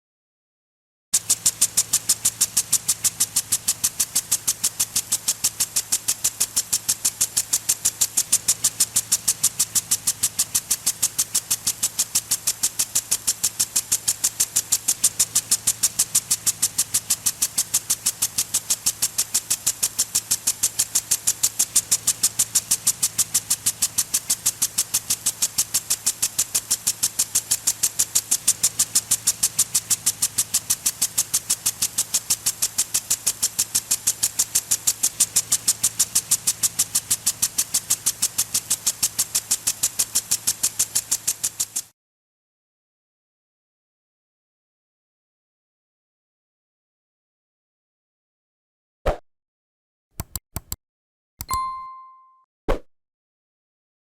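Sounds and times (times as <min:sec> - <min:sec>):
impact sprinkler ticking: 0:01.2 - 0:33.4
hiss of water spray: 0:01.2 - 0:41.9.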